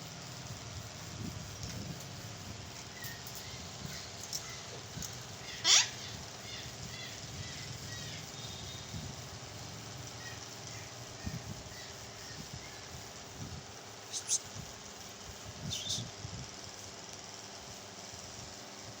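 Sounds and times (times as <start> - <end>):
parrot screech: 5.5 - 6.1
faint small chirps: 14.1 - 14.5, 15.6 - 16.1.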